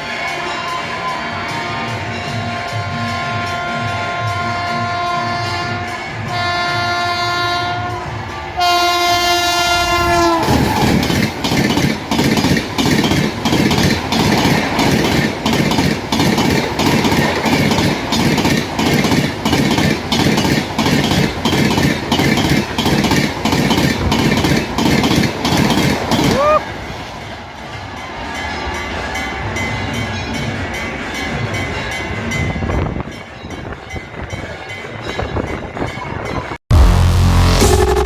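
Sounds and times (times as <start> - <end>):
locomotive horn blasts: 2.6 - 10.6
train coaches clattering over rail joints: 10.5 - 26.4.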